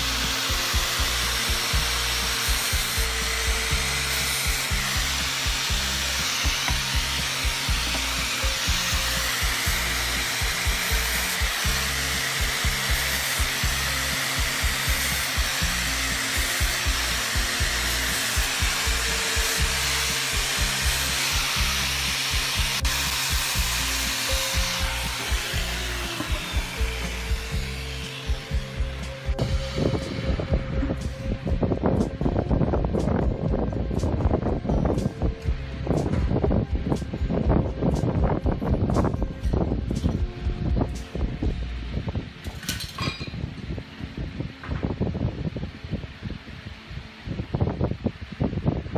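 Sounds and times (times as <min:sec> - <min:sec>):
power tool hissing on wood: 0:00.0 - 0:31.0
background music with beat: 0:00.0 - 0:42.5.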